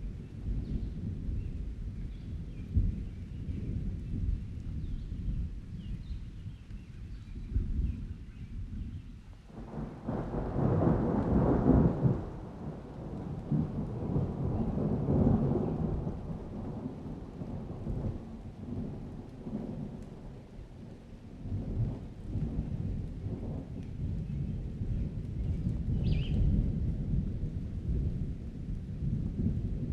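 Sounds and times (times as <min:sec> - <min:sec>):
falling rain: 0:00.0 - 0:29.9
rolling thunder: 0:00.0 - 0:29.9.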